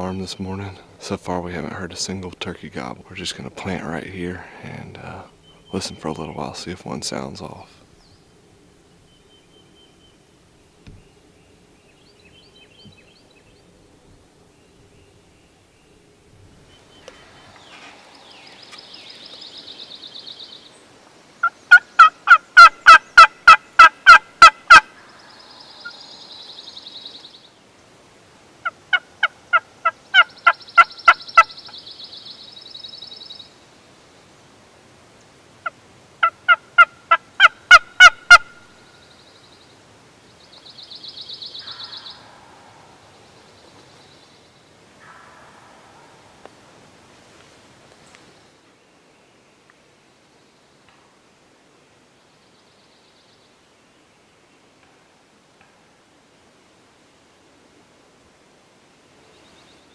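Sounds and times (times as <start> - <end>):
turkey yelping: 21.7 - 24.9, 28.6 - 31.5, 36.2 - 38.6.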